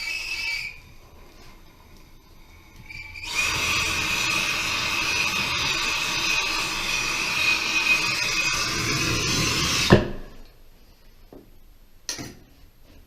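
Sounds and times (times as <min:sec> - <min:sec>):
power tool motor whining: 0:03.0 - 0:10.0.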